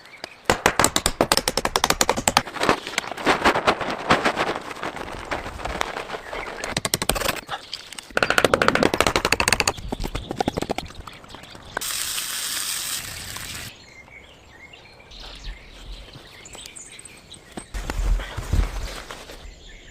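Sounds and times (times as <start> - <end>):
sharp knocks and clicks: 0.5 - 2.5, 6.6 - 7.4, 8.0 - 11.0
birds chirping faintly: 9.4 - 12.0, 13.1 - 19.9
steady hiss: 11.8 - 13.8.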